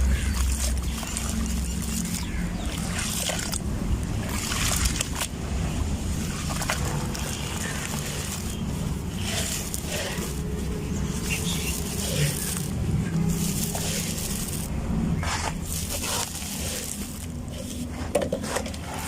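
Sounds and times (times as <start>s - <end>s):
sand-cement crumbling and crunching: 6.7s - 19.0s.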